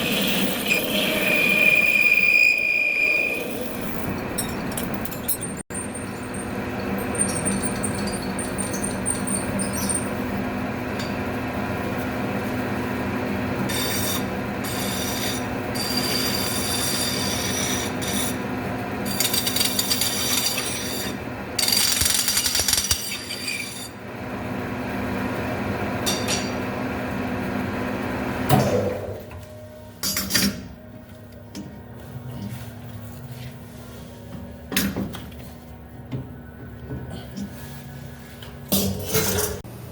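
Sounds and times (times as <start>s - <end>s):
cutting tool scraping metal: 19.0s - 24.0s.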